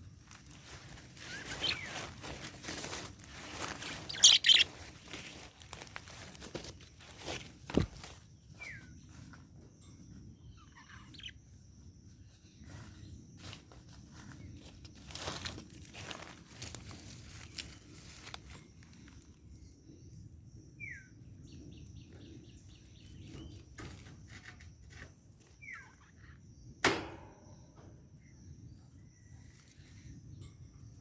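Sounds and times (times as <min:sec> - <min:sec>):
rustling and scuffling: 0:00.2 - 0:09.5, 0:12.6 - 0:19.3
budgerigar chirping: 0:03.8 - 0:04.8, 0:10.5 - 0:11.4.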